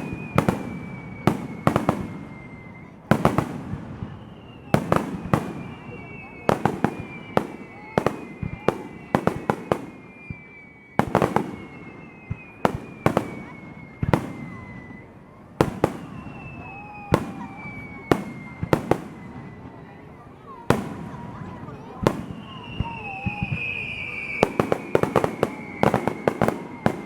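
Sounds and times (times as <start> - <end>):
firework whistles sliding down: 0.0 - 27.0.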